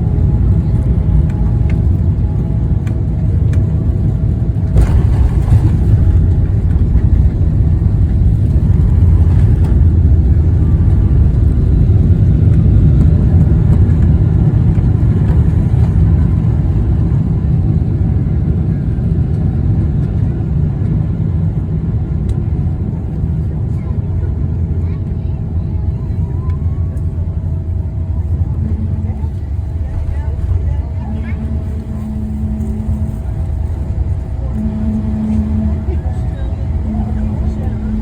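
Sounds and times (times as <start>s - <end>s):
deep rumble of jet landing: 0.0s - 38.0s.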